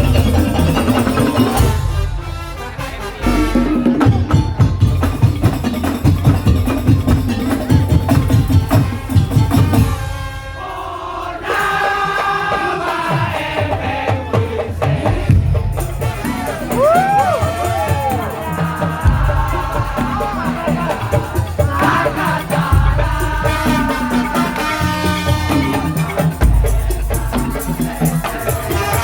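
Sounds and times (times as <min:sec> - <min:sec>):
melody over light percussion: 0:00.0 - 0:02.0, 0:04.0 - 0:10.5
wooden slit drums and drums beating: 0:00.0 - 0:29.0.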